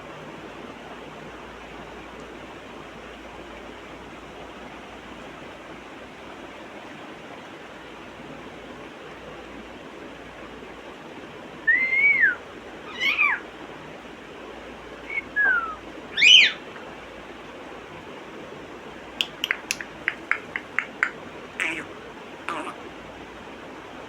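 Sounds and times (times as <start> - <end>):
parrot whistled calls: 11.7 - 13.4, 15.1 - 16.6, 19.2 - 22.8
parrot sharp clicks: 19.2 - 21.9.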